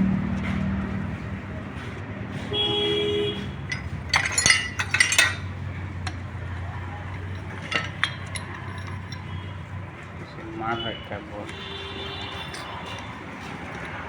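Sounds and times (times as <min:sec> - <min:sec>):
metal engine parts clinking: 0:03.4 - 0:09.7, 0:12.0 - 0:14.0.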